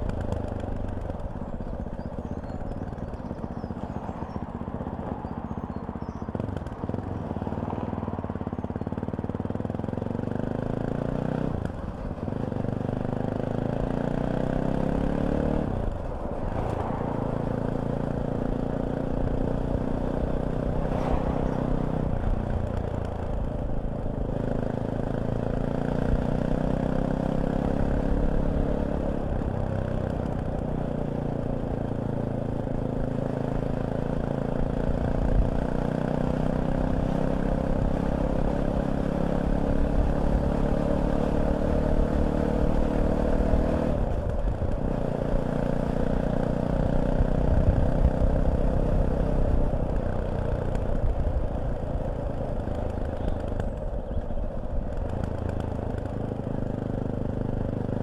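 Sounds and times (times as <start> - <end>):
motorcycle engine running: 0.0 - 58.0.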